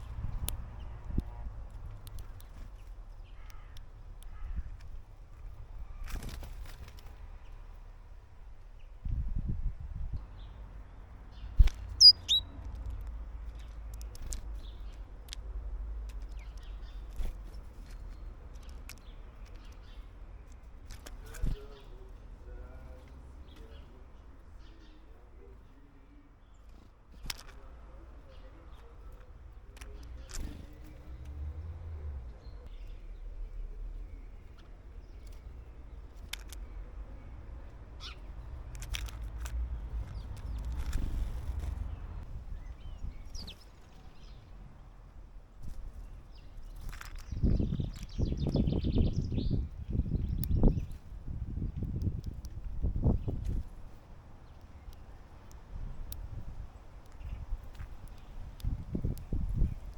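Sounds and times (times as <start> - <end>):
birds ticking and chirping: 0.0 - 9.2, 10.0 - 59.9
small bird chirping: 11.3 - 12.6, 32.3 - 44.7, 45.6 - 59.9.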